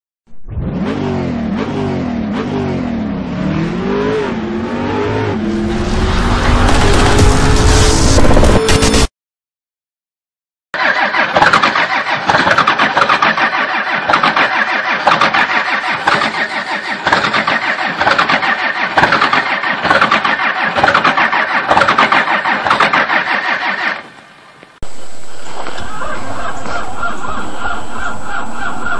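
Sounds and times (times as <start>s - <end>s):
engine cranking on starter: 10.8s - 24.1s.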